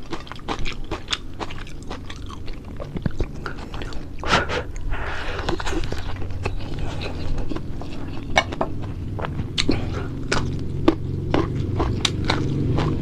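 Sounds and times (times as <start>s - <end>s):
chewing with crunches: 0.0s - 13.0s
steady low hum: 0.0s - 13.0s.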